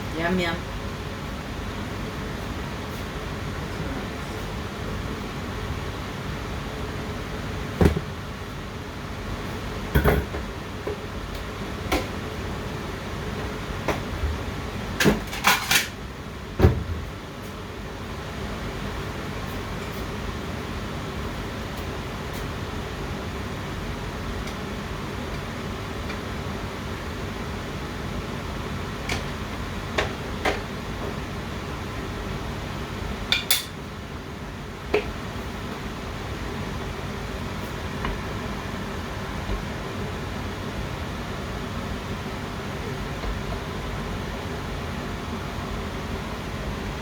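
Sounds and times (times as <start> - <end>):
steady background hum: 0.0 - 47.0
kitchenware knocking and clinking: 10.0 - 10.4.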